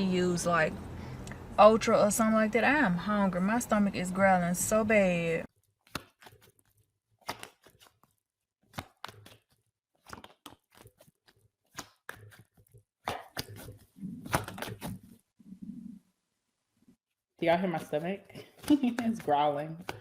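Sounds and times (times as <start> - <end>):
stomach gurgling and growling: 13.1 - 16.2.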